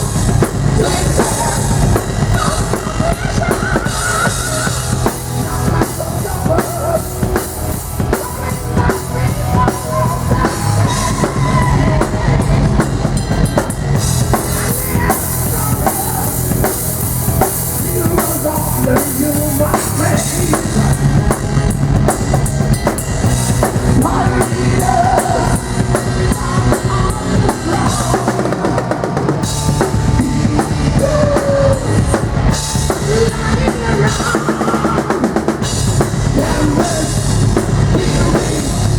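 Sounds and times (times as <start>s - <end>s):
heavy metal band playing: 0.0s - 38.9s.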